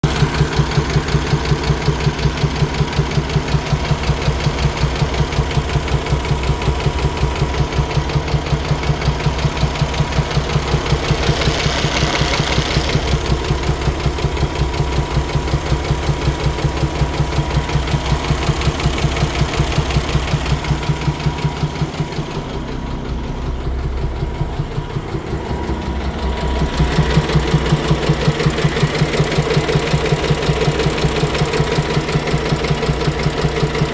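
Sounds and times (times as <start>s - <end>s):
diesel engine idling with knock: 0.0s - 33.9s.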